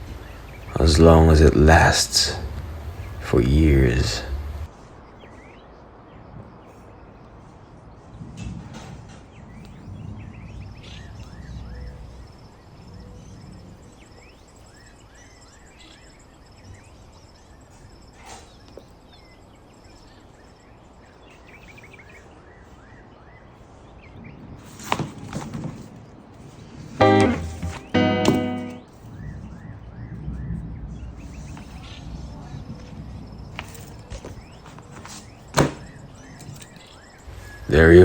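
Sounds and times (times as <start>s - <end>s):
small birds chirping: 0.0s - 25.0s, 25.7s - 38.0s
low background noise: 0.0s - 38.0s
faint high trill: 27.0s - 28.8s.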